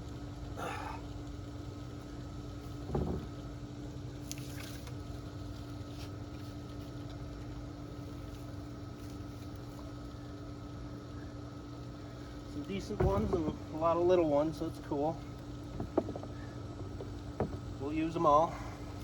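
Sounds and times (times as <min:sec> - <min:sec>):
low mechanical hum: 0:00.0 - 0:19.0
dull thump: 0:02.8 - 0:03.4, 0:12.8 - 0:13.7, 0:15.7 - 0:16.4, 0:17.0 - 0:17.7.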